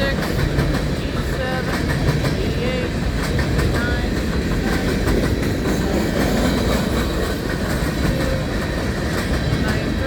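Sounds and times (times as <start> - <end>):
rail cars rumbling: 0.0 - 10.0
wheels clacking over rail joints: 0.0 - 10.0.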